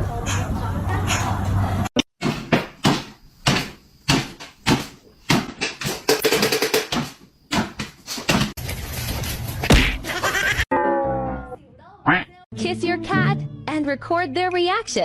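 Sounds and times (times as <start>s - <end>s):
knocks and thumps: 2.2s - 8.6s.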